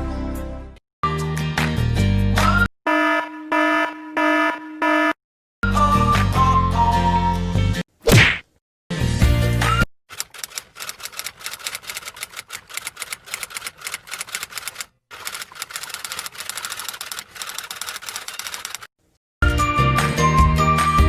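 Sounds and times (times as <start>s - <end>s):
rapid typing key clicks: 10.1s - 18.9s.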